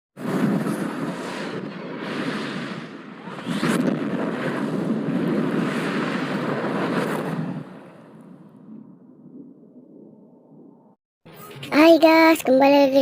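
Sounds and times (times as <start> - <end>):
steady rushing noise: 0.2 - 10.9
rising whoosh: 0.2 - 11.0.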